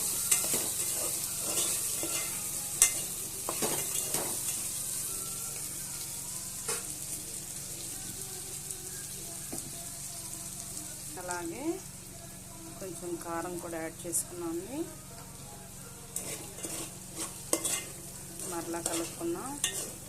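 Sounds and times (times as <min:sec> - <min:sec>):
food sizzling in oil: 0:00.0 - 0:20.0
utensil scraping a pan: 0:16.2 - 0:20.0.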